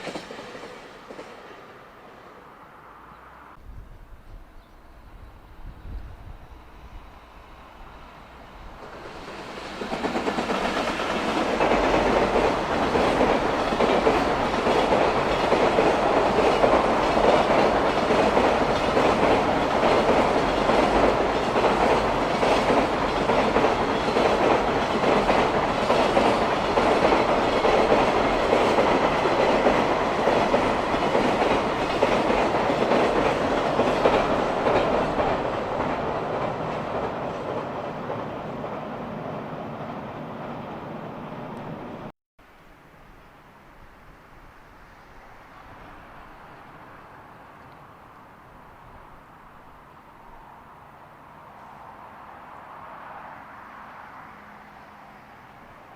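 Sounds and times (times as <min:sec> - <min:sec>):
freight train wheels clattering: 0:08.8 - 0:38.9.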